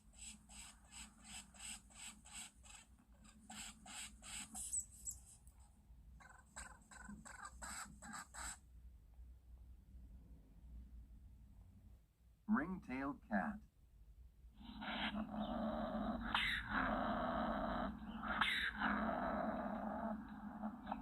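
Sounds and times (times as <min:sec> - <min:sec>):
lemming squeaky chirps: 0:00.9 - 0:05.4.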